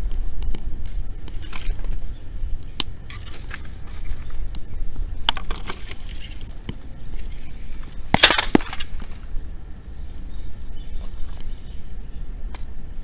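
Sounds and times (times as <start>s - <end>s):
firewood cracking: 0.0s - 9.4s
steady low rumble: 0.0s - 13.0s.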